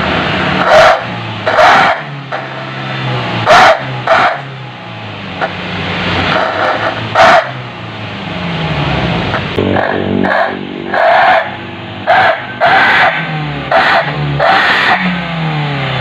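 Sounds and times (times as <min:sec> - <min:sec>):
car exhaust drone: 0:00.0 - 0:16.0
sharp loud exhaust bursts: 0:06.1 - 0:15.3.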